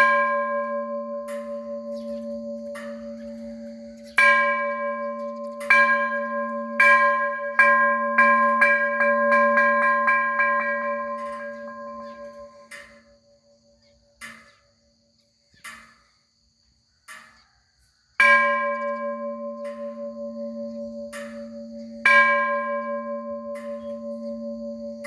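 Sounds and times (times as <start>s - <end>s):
large metal bell ringing: 0.0s - 13.1s, 18.2s - 25.0s.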